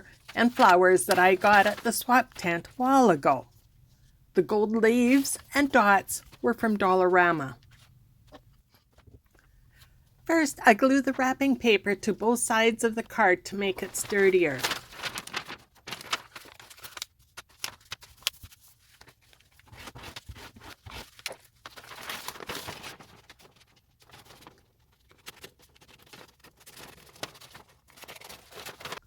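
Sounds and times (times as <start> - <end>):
wrapping paper rustling: 0.0 - 2.8, 13.0 - 29.0.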